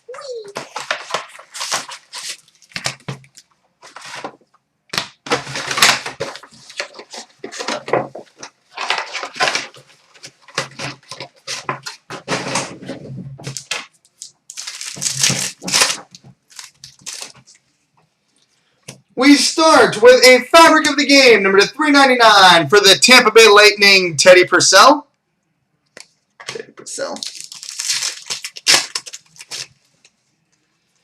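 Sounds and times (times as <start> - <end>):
card pack wrappers crinkling and tearing: 0.3 - 17.6, 26.9 - 30.2.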